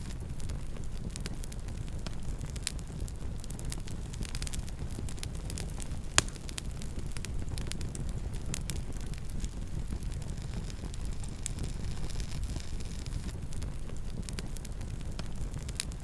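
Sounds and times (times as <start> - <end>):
campfire crackling: 0.0 - 16.0.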